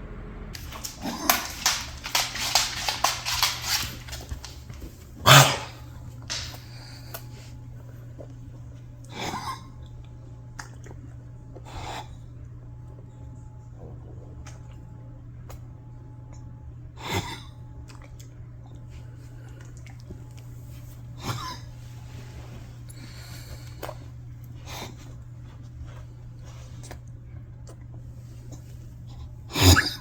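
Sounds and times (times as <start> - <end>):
pet nose coughing: 0.6 - 2.2, 5.2 - 5.8, 9.1 - 9.8, 21.2 - 21.7, 29.4 - 30.0.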